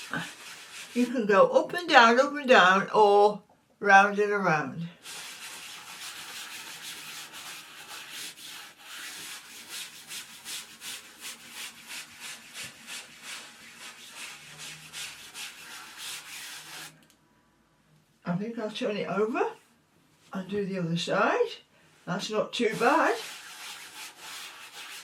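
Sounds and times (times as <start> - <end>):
brush scraping fabric: 0.0 - 1.3, 5.0 - 17.0, 22.6 - 25.0.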